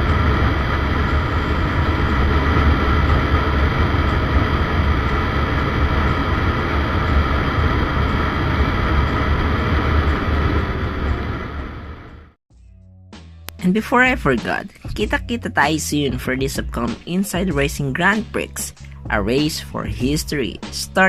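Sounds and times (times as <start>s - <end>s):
wind noise on microphone: 0.0s - 12.2s
motorcycle engine running: 0.0s - 12.3s.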